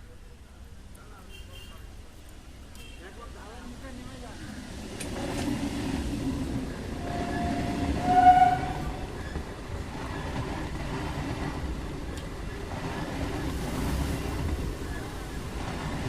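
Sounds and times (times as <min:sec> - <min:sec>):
electric train rumbling: 0:03.5 - 0:16.0
train horn blast: 0:06.9 - 0:09.1.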